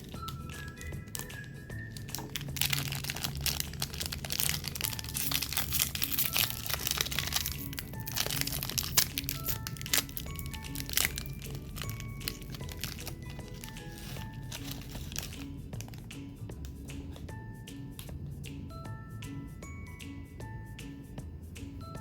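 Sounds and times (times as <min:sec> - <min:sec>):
crunching of cookies being chewed: 0:00.0 - 0:16.2
soft background music: 0:00.0 - 0:22.0.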